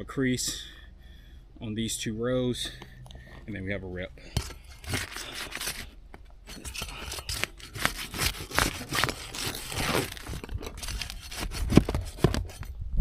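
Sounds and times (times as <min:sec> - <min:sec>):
roof shingles scraping: 0:04.8 - 0:05.9, 0:06.5 - 0:12.6.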